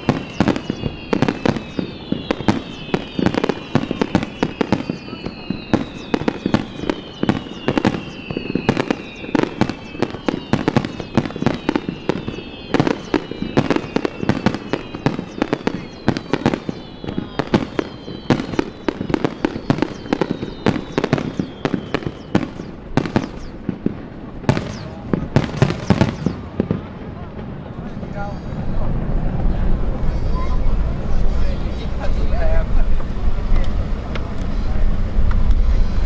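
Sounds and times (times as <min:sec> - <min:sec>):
firework shell bursts: 0:00.0 - 0:27.0
high whistling tones gliding down: 0:00.0 - 0:36.0.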